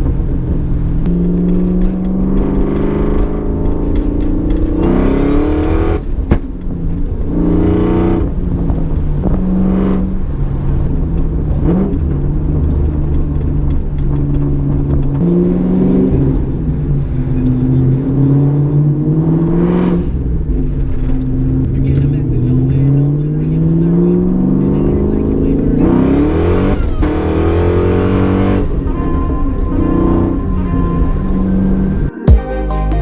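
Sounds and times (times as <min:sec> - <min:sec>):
car engine revving: 0:00.0 - 0:32.1
music: 0:28.9 - 0:33.0.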